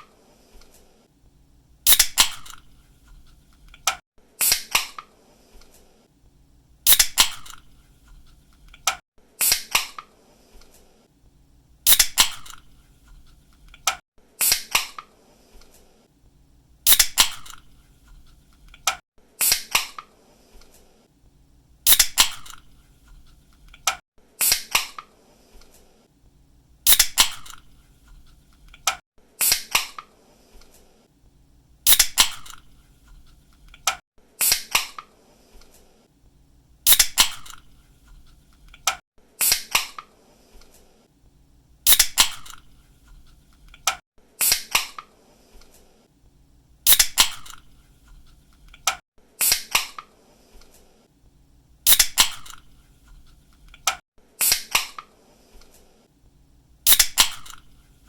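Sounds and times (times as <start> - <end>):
can opening snap and fizz: 1.9 - 4.8, 6.9 - 9.8, 11.9 - 14.8, 16.9 - 17.7, 21.9 - 22.7, 26.9 - 29.0, 31.9 - 32.7, 36.9 - 37.7, 41.9 - 42.7, 46.9 - 47.7, 51.9 - 54.8, 56.9 - 57.7.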